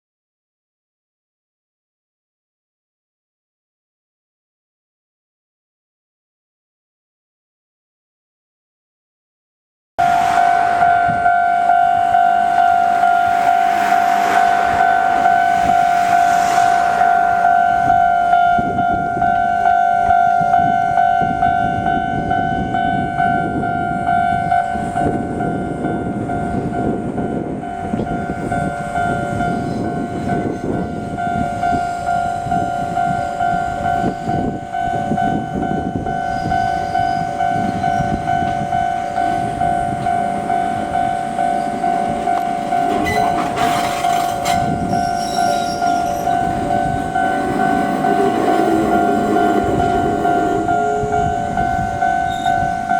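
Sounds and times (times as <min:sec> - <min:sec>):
rushing noise: 0:10.0 - 0:20.4, 0:39.2 - 0:52.9
electric train rumbling and rattling: 0:10.0 - 0:52.9
level-crossing alarm clanging: 0:10.0 - 0:52.9.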